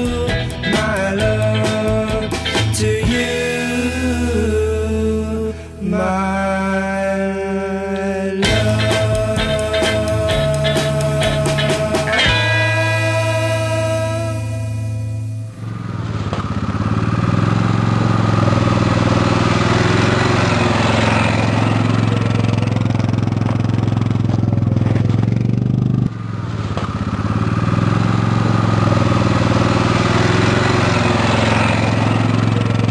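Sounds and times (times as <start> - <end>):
vehicle engine running: 0.0 - 6.2, 8.4 - 32.9.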